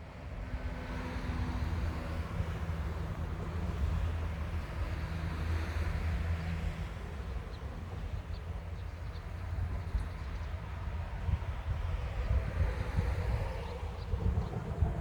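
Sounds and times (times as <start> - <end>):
electric train rumbling on track: 0.0 - 15.0.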